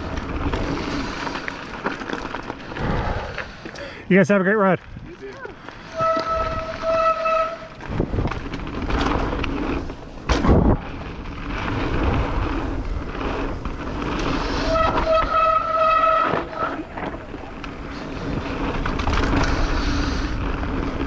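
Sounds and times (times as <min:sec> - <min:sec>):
tyre and wind noise: 0:00.0 - 0:21.0
bike brakes squealing: 0:05.8 - 0:07.8, 0:14.3 - 0:17.0.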